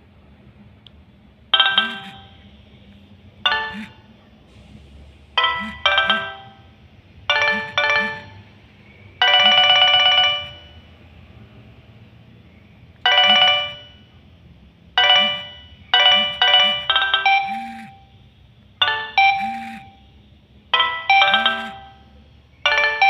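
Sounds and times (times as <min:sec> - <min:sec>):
mobile phone ringtone melody: 0:01.5 - 0:02.5, 0:03.4 - 0:04.0, 0:05.4 - 0:06.7, 0:07.3 - 0:08.5, 0:09.2 - 0:10.8, 0:13.0 - 0:14.0, 0:15.0 - 0:18.1, 0:18.8 - 0:20.1, 0:20.7 - 0:23.0.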